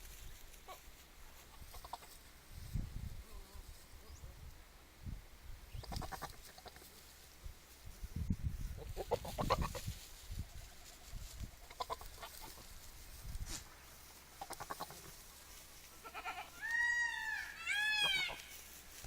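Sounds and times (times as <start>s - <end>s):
goat bleating: 5.8s - 6.8s, 11.7s - 12.6s, 14.4s - 15.2s, 15.9s - 18.5s.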